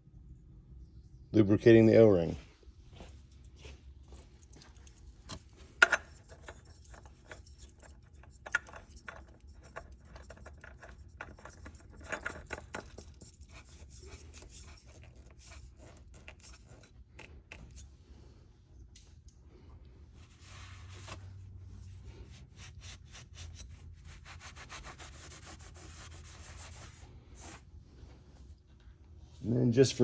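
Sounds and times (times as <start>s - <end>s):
oil filter scraping and rubbing: 3.6s - 18.0s, 20.1s - 27.6s.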